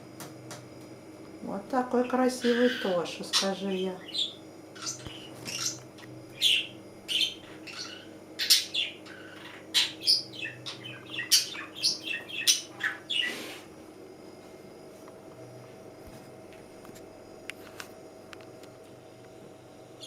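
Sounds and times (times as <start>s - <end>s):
budgerigar chirping: 2.4s - 5.8s, 6.4s - 13.4s.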